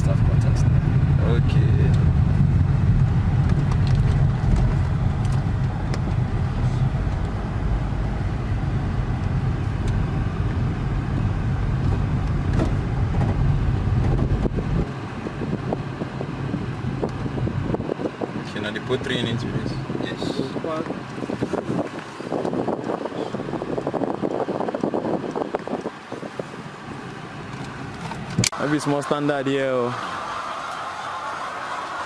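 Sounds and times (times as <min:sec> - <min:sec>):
car driving rumble: 0:00.0 - 0:32.0.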